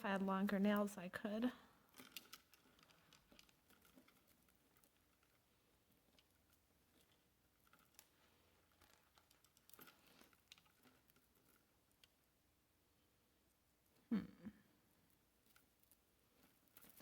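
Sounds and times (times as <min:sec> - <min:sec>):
jewelry chain clicking: 0:01.9 - 0:05.4.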